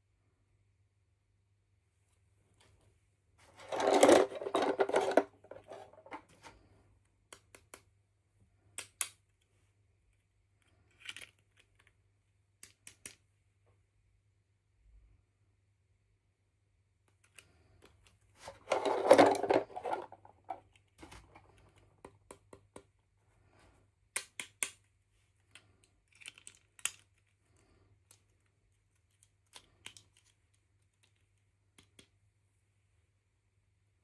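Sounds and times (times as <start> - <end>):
packaging rustling: 3.5 - 6.2, 18.4 - 20.6
plastic parts clicking and tapping: 3.5 - 6.5, 10.6 - 12.0, 12.6 - 13.2, 17.0 - 23.0, 24.1 - 32.2.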